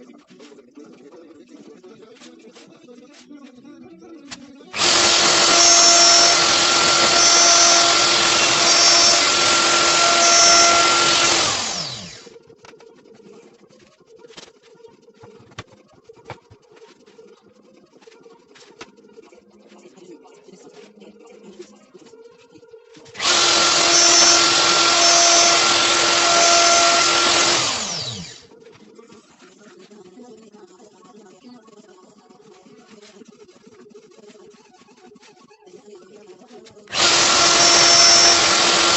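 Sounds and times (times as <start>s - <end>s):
electric motor whining: 4.8s - 12.3s, 23.2s - 28.4s, 36.9s - 38.9s.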